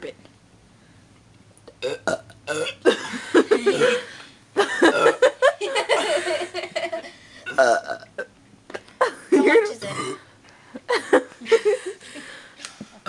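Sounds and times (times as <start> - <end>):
burps: 1.7 - 2.9, 3.6 - 4.2, 4.8 - 5.2, 7.4 - 8.8, 9.8 - 10.3
people laughing: 4.6 - 7.1, 10.9 - 12.3.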